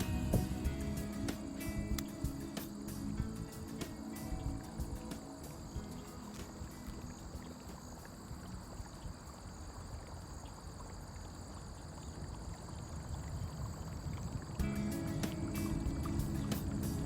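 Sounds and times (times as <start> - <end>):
insect chorus: 0.0 - 17.0.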